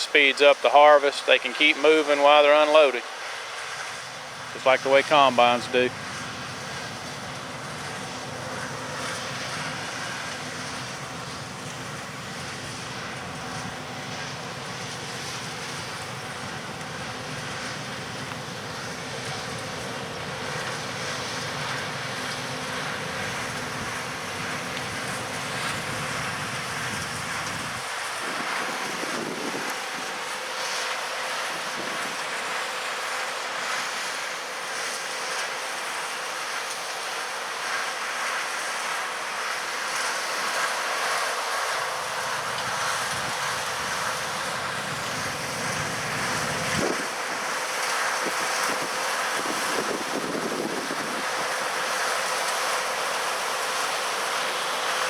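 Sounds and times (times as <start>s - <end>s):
farm machinery humming: 0.0s - 55.0s
wind on microphone: 26.8s - 30.0s, 48.2s - 51.5s.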